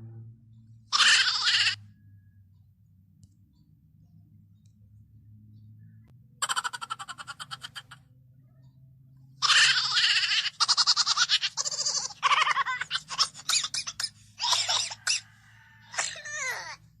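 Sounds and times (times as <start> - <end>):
shrill high-pitched cackle: 0.9 - 1.9, 6.4 - 8.1, 9.4 - 16.9.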